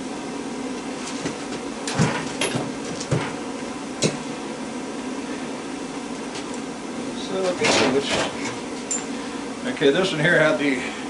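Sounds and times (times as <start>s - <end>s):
metal transformers clunking: 7.4s - 9.1s.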